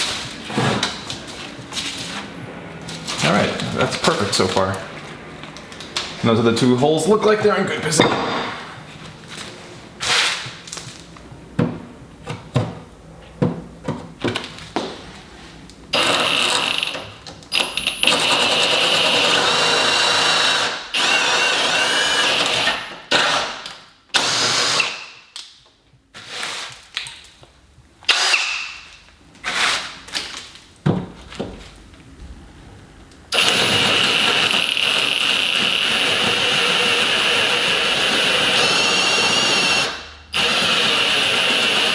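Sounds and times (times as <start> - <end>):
electric drill boring into wood: 16.0 - 17.0, 17.6 - 23.5, 24.2 - 25.0, 33.4 - 41.9.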